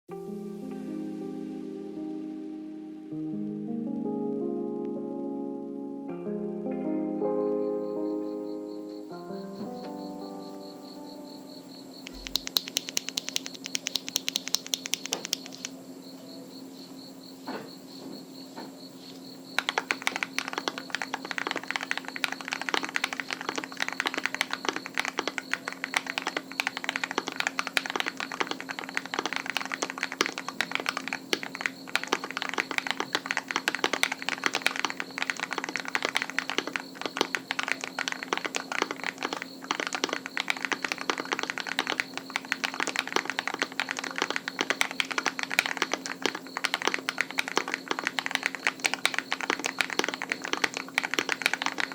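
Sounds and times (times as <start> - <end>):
fast keyboard typing: 11.5 - 15.8, 19.2 - 51.9.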